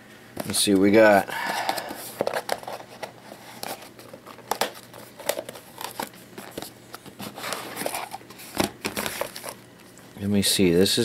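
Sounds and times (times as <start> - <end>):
packaging crinkling and tearing: 1.4 - 10.1.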